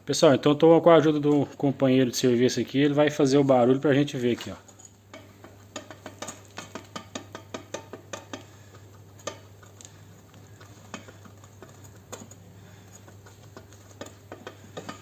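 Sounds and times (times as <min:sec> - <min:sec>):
shock absorber rod clicking and knocking: 0:05.1 - 0:15.0.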